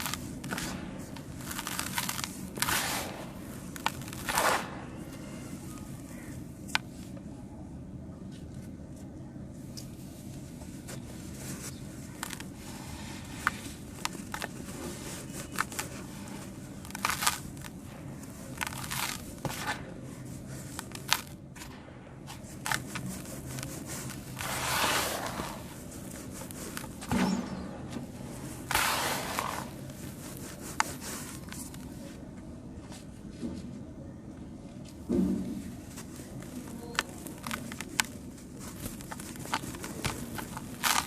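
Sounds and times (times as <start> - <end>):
cement chunks crushing and crumbling: 12.2 - 19.9.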